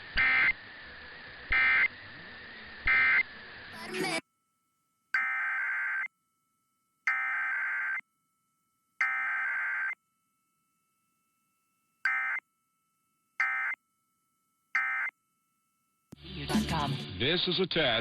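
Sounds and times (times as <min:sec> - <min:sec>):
buzzing data tone bursts: 0:00.0 - 0:00.7, 0:01.3 - 0:02.0, 0:02.8 - 0:04.2, 0:05.2 - 0:06.2, 0:07.0 - 0:08.1, 0:09.0 - 0:10.0, 0:12.0 - 0:12.5, 0:13.4 - 0:13.8, 0:14.7 - 0:15.2.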